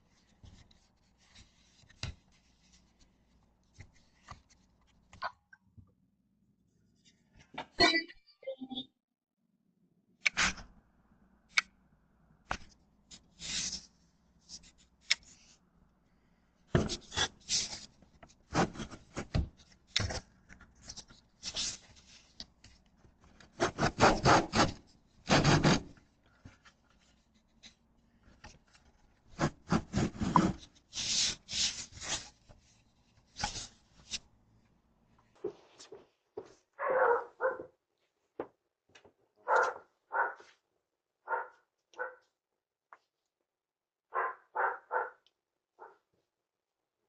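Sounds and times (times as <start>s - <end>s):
rubbing and scraping: 20.8s - 27.7s, 28.3s - 34.2s.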